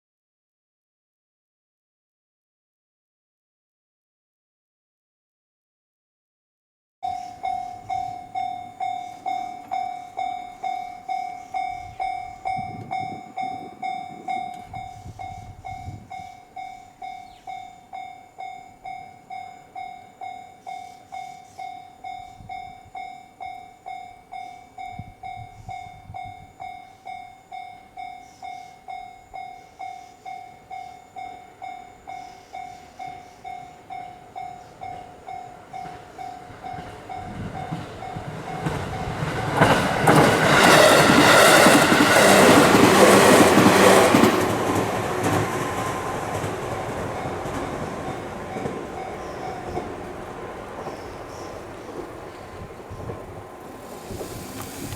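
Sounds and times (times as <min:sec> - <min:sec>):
approaching train rumble: 0:07.0 - 0:20.0, 0:20.6 - 0:54.9
level-crossing bell ringing: 0:07.0 - 0:39.2, 0:46.4 - 0:52.7.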